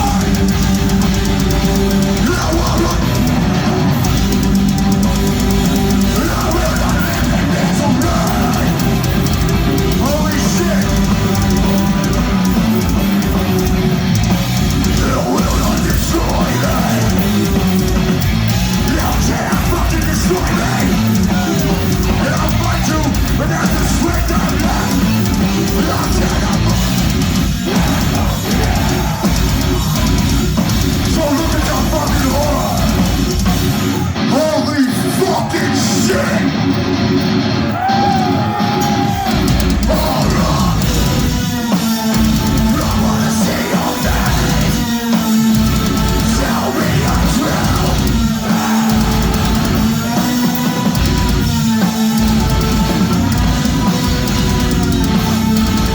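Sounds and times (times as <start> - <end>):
harsh shouted vocals: 0.0 - 55.9
metal band playing live: 0.0 - 55.9.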